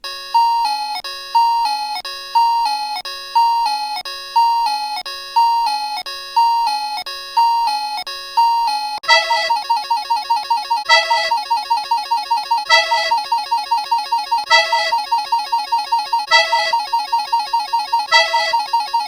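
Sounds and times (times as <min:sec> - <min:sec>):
two-note bell chime: 0:09.1 - 0:09.7, 0:10.9 - 0:11.4, 0:12.7 - 0:13.2, 0:14.5 - 0:15.0, 0:16.3 - 0:16.9, 0:18.1 - 0:18.8.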